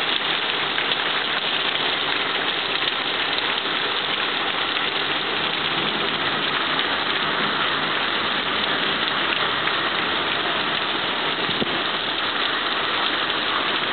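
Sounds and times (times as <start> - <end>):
heavy rain pouring: 0.0 - 13.9.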